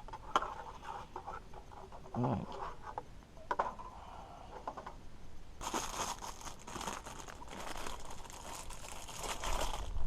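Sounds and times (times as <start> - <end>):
plastic packaging crinkling and tearing: 5.6 - 10.0.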